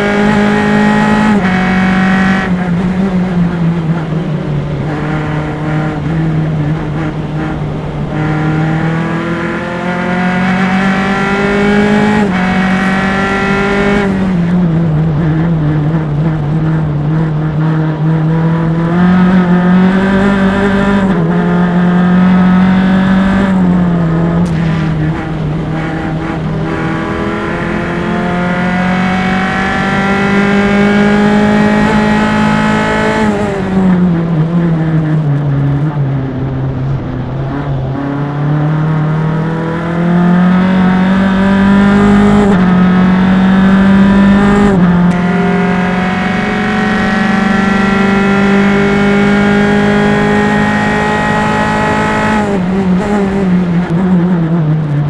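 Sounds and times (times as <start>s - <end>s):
race car engine revving: 0.0s - 55.0s.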